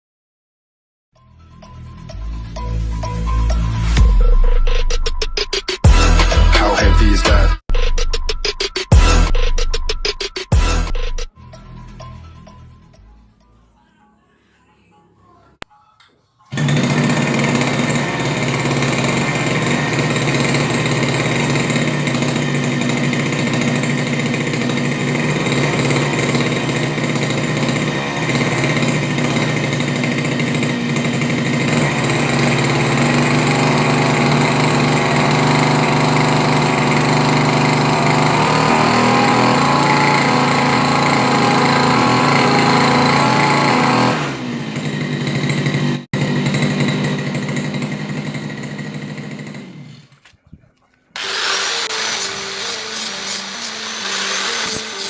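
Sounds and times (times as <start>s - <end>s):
small motor buzzing and rattling: 16.6s - 50.2s, 51.2s - 55.0s.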